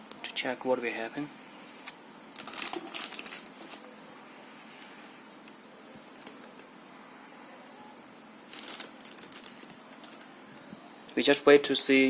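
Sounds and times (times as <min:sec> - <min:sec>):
faint hum: 0:00.0 - 0:12.0.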